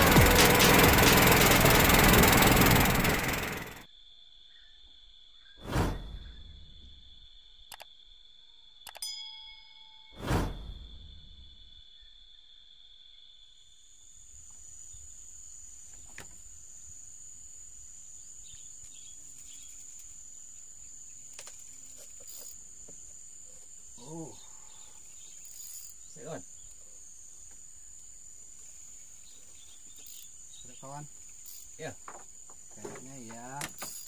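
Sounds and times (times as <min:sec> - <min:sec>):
high-pitched insect chorus: 0:00.0 - 0:09.1, 0:10.0 - 0:34.0.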